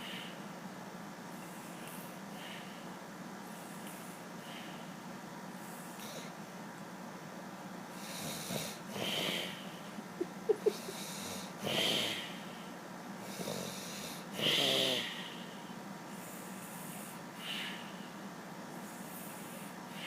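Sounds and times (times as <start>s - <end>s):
man snoring: 10.6s - 12.3s, 13.3s - 15.2s.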